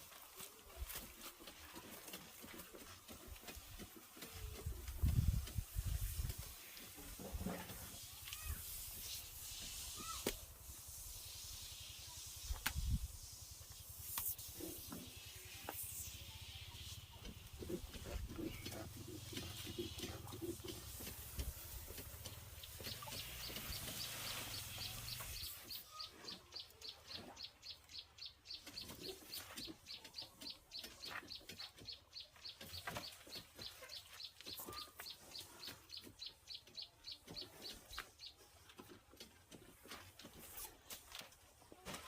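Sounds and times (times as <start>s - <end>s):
chickens clucking: 16.8s - 40.3s.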